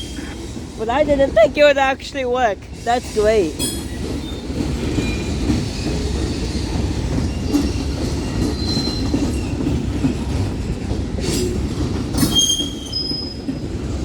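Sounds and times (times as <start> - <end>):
steel wheels rumbling on rail: 0.0 - 14.0
wheel squeals: 3.6 - 9.9, 12.2 - 13.7.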